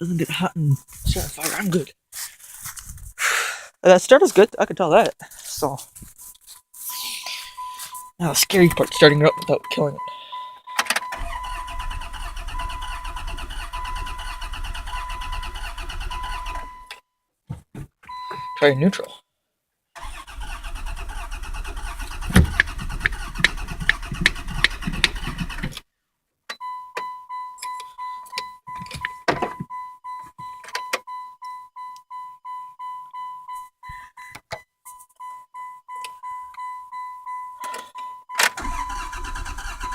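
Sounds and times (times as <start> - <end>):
dashboard warning chime: 6.9 - 17.0, 18.1 - 19.2, 26.5 - 39.2
starter cranking engine: 11.0 - 16.7, 20.0 - 25.8, 38.4 - 39.9.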